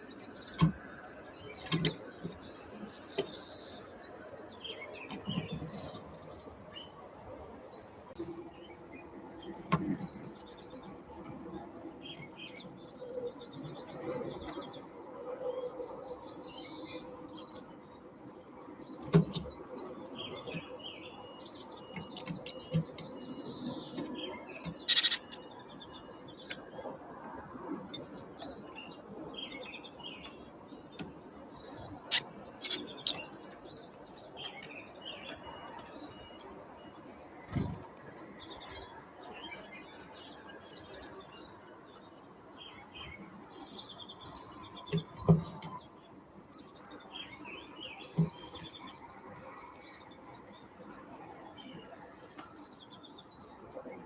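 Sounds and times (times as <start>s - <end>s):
songbirds chirping: 0.0s - 54.0s.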